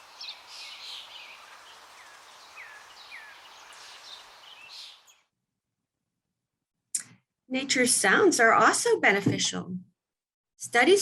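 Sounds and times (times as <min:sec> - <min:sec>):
birds chirping and calling: 0:00.0 - 0:05.3.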